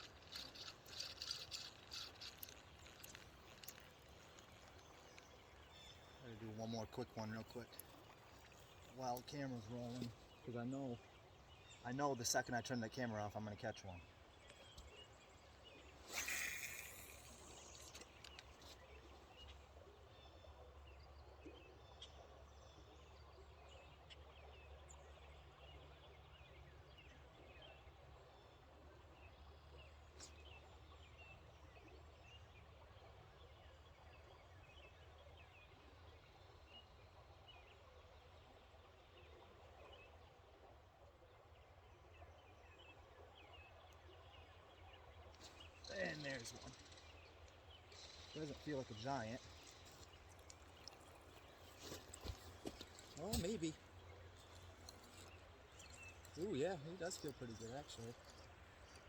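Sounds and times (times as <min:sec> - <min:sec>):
small high chirps: 0:00.0 - 0:06.3, 0:16.0 - 0:18.5.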